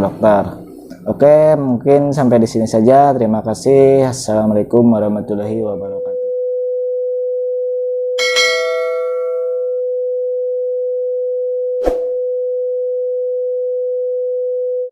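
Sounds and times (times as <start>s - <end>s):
steady electronic tone: 0.0s - 2.9s, 8.2s - 9.8s
bell-like ding: 8.2s - 9.8s.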